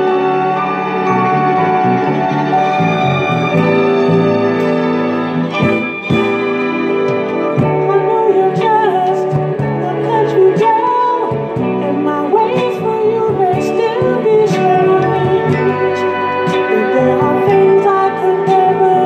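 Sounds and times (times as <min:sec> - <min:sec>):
strings backing: 0:00.0 - 0:19.0
wordless vocal melody: 0:05.4 - 0:19.0.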